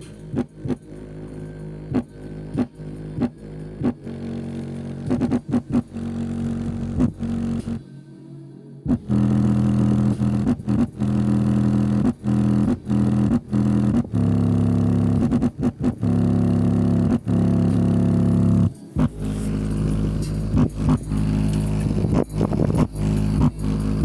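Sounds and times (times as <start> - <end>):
subwoofer playing deep bass notes: 0.0 - 7.8, 8.9 - 24.0.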